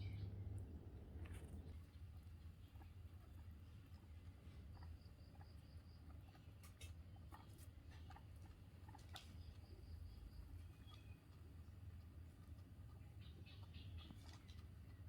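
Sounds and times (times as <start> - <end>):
low hum: 0.0 - 1.9
guinea pig chirping: 0.0 - 15.0.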